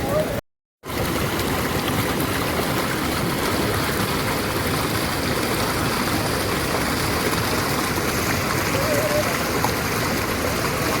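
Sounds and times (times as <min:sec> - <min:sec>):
stream running: 0:00.0 - 0:11.0.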